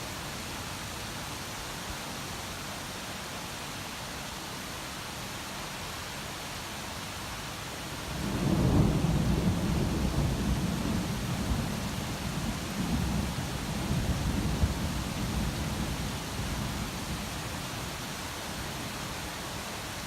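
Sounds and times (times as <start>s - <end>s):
rain hissing: 0.0s - 20.0s
thunder rumbling: 8.2s - 15.9s.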